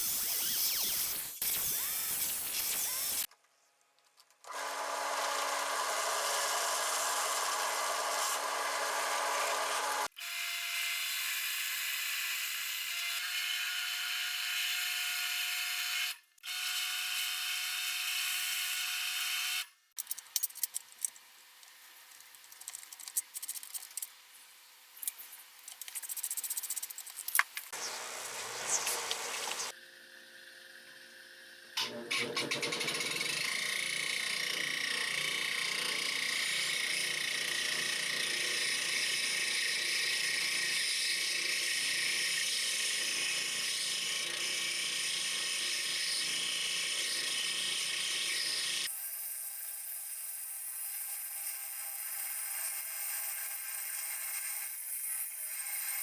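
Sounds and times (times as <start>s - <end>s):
power tool running: 4.5s - 10.7s, 31.8s - 49.0s
clicks and handling sounds: 20.0s - 24.3s, 24.9s - 28.0s.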